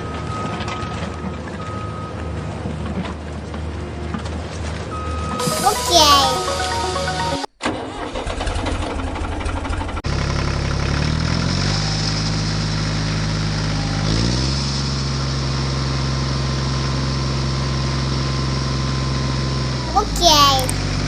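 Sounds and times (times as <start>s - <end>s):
engine running and revving: 10.1s - 19.8s.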